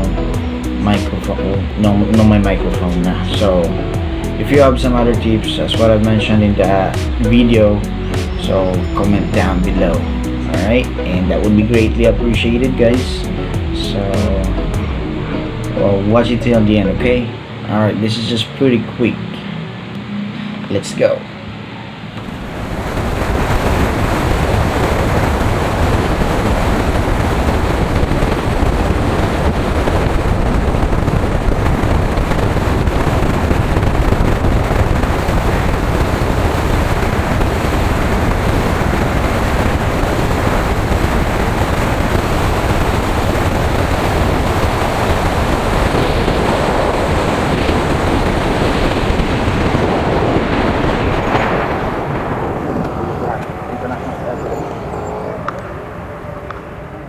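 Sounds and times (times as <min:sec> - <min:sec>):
wind buffeting microphone: 0:22.0 - 0:57.0.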